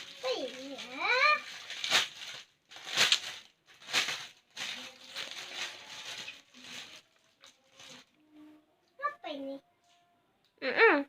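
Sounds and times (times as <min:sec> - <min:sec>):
parcel packaging crackling and rustling: 0:00.0 - 0:08.2.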